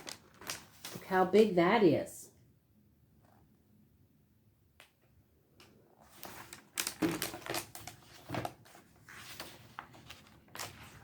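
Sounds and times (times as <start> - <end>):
book pages turning: 0.0 - 1.1, 5.6 - 11.0.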